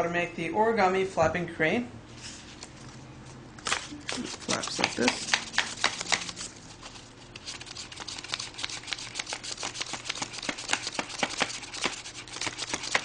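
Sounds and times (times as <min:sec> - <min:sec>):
paper clicking and rustling: 0:03.6 - 0:13.0.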